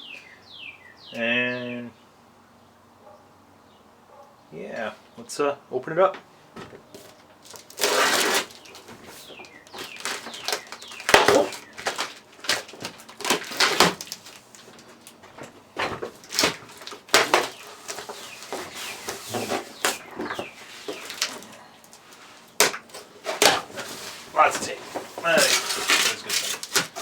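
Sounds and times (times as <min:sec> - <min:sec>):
packing tape ripping: 0:07.4 - 0:15.2, 0:16.0 - 0:27.0.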